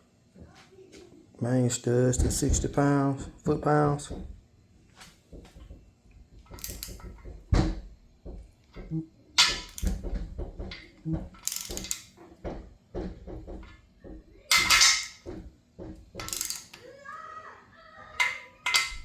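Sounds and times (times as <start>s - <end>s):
torque wrench ratchet clicks: 6.6s - 7.1s, 11.4s - 12.1s, 16.2s - 16.8s.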